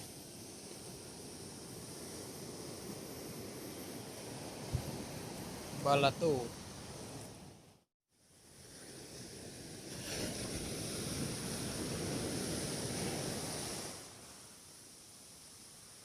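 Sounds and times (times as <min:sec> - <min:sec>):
waves washing on shore: 0:08.5 - 0:14.6.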